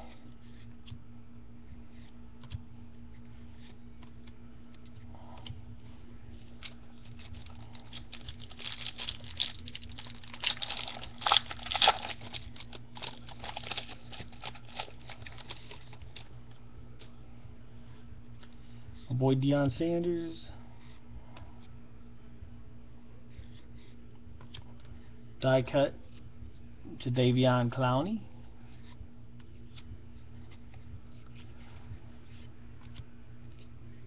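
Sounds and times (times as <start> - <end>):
faint steady hum: 0.0 - 34.0
cards shuffling and clicking: 6.5 - 16.4
wrapper tearing and crinkling: 7.0 - 16.0.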